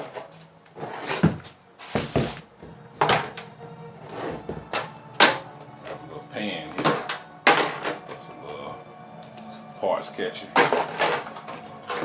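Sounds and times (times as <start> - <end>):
tools clattering on a workbench: 10.5 - 12.0.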